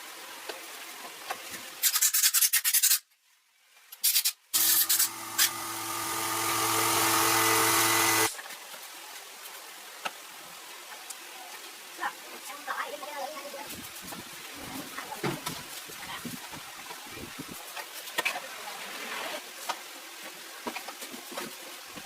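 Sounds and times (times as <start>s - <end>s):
sanding rasping strokes: 4.1s - 8.3s
electric power tool humming: 4.6s - 8.4s.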